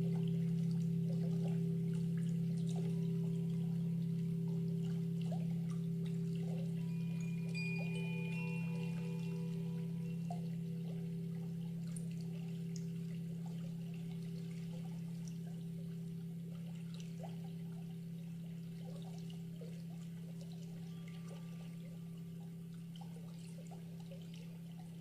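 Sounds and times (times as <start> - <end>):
large meditation bell ringing: 0.0 - 16.3, 20.7 - 22.7
faint trickling water: 0.0 - 25.0.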